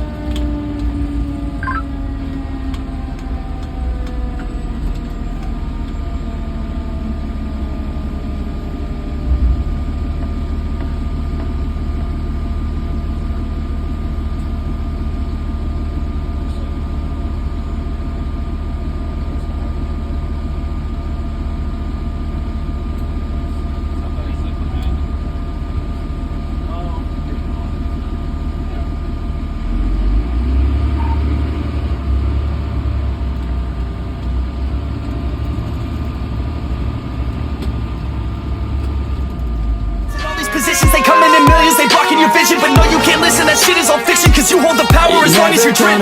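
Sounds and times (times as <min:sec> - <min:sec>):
engine and road rumble: 0:00.0 - 0:40.2
falling tones: 0:01.3 - 0:02.6, 0:40.1 - 0:46.0
steady whine: 0:40.1 - 0:46.0.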